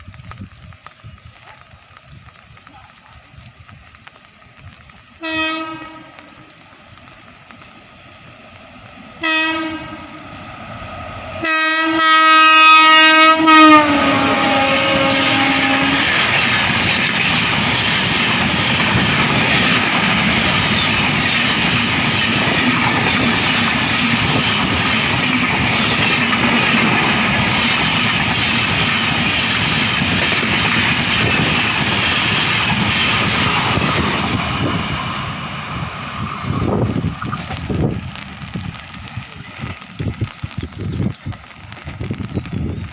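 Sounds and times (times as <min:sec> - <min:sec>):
train running past: 0:00.0 - 0:42.9
train horn blast: 0:05.2 - 0:06.4, 0:09.2 - 0:10.2, 0:11.4 - 0:16.1.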